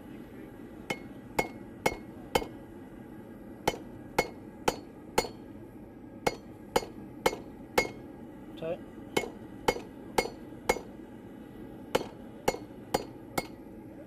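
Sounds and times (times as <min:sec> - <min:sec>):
hammer striking hot steel: 0:00.8 - 0:02.6, 0:03.6 - 0:05.5, 0:06.2 - 0:08.1, 0:09.1 - 0:11.0, 0:11.9 - 0:13.7.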